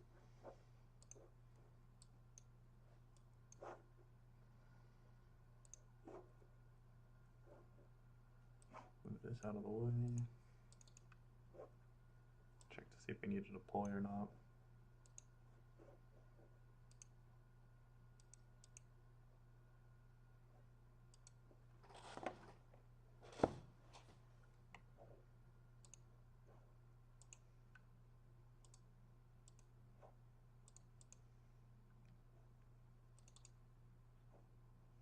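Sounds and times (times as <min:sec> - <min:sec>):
low steady hum: 0:00.0 - 0:35.0
faint computer mouse clicks: 0:01.0 - 0:01.2, 0:05.6 - 0:05.9, 0:09.4 - 0:11.2, 0:15.0 - 0:15.3, 0:16.9 - 0:17.2, 0:18.2 - 0:18.9, 0:25.8 - 0:26.1, 0:28.6 - 0:29.7, 0:30.7 - 0:31.2, 0:33.2 - 0:33.6.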